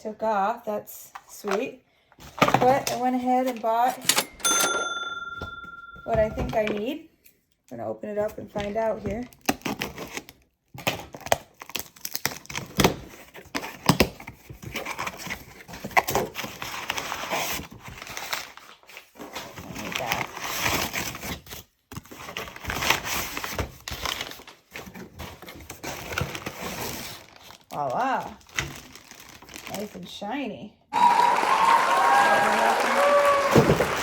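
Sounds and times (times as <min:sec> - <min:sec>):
packaging being torn and crinkled: 0:09.2 - 0:29.9.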